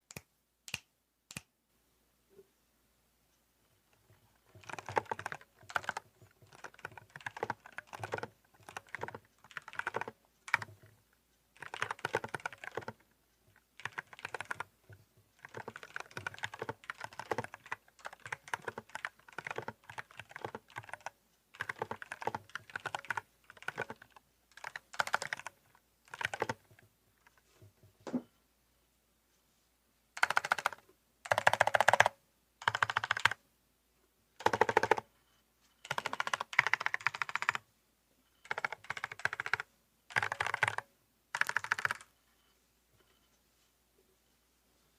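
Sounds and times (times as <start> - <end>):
mechanical keyboard typing: 4.4 - 10.9, 11.6 - 13.0, 13.8 - 14.7, 15.4 - 26.7, 30.2 - 33.4, 34.4 - 35.1, 35.8 - 37.6, 38.4 - 42.1.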